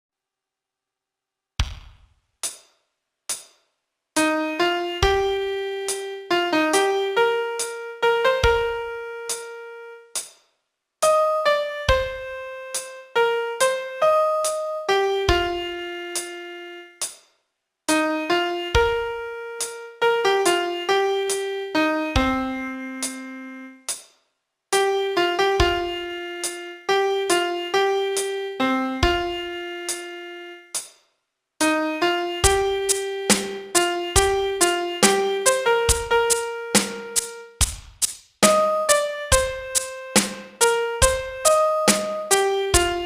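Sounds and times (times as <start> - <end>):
solo piano melody: 4.2 - 10.1, 11.0 - 17.0, 17.9 - 23.9, 24.8 - 30.7, 31.6 - 37.6, 38.4 - 43.0.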